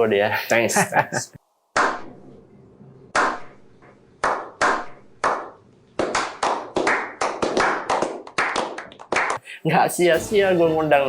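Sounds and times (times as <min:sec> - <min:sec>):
hands clapping: 0:04.2 - 0:09.4.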